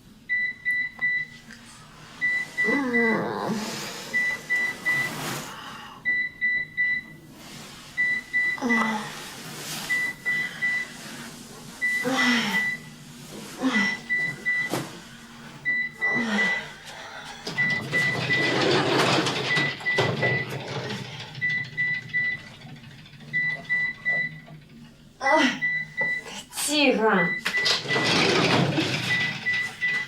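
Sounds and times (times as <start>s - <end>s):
groans falling in pitch: 2.6s - 3.8s
digital alarm clock beeping: 4.1s - 5.1s, 9.9s - 10.8s, 17.6s - 18.6s, 21.4s - 22.5s, 23.3s - 24.5s, 25.6s - 26.2s, 27.2s - 28.3s, 29.0s - 30.0s.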